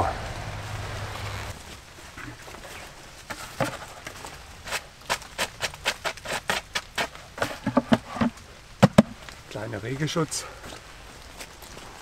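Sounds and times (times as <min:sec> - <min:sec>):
sharp wooden knocks and clicks: 0:05.1 - 0:09.2.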